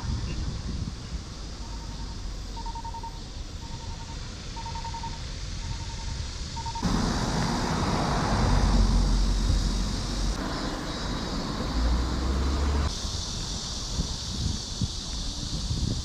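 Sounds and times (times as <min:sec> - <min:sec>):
vehicle passing by: 0:06.8 - 0:12.9.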